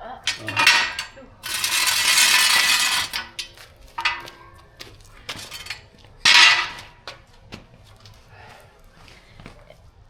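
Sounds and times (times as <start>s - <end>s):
metal jack stand clinking: 0.2s - 4.4s, 5.3s - 7.0s
metal sliding rasp: 0.3s - 4.3s, 5.3s - 6.8s.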